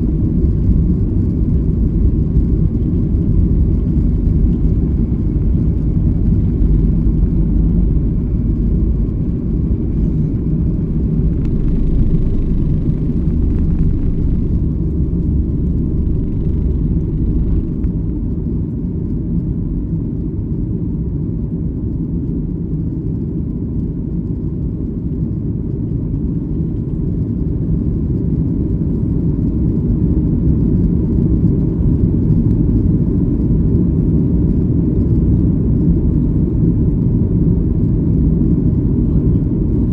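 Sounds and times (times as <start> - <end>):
jet engines droning in cabin: 0.0 - 39.9.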